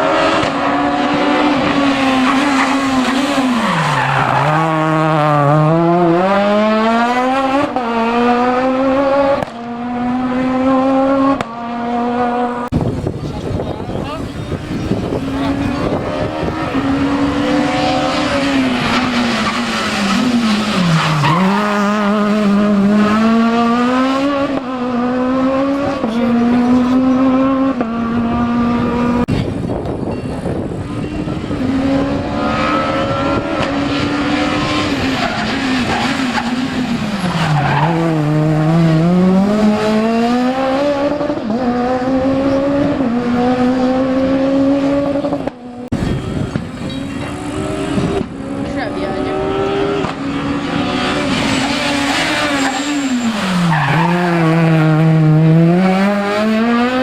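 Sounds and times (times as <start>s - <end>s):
rally car engine accelerating: 0.0s - 57.0s.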